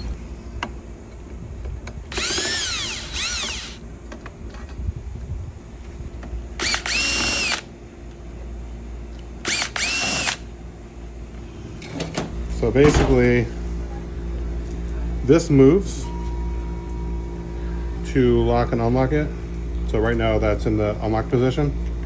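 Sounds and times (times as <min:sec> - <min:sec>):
cordless drill whirring: 0:02.1 - 0:03.8, 0:06.6 - 0:07.7, 0:09.4 - 0:10.5.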